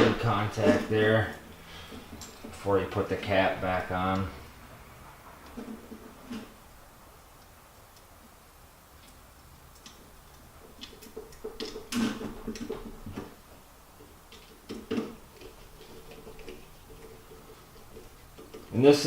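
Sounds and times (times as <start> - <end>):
small parts clicking and tapping: 9.0 - 13.4, 14.0 - 18.8.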